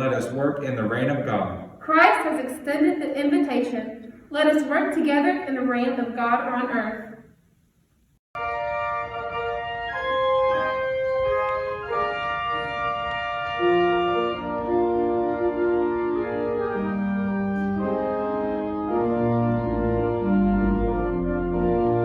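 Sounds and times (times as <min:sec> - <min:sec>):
organ playing sustained chords: 0:08.4 - 0:22.0.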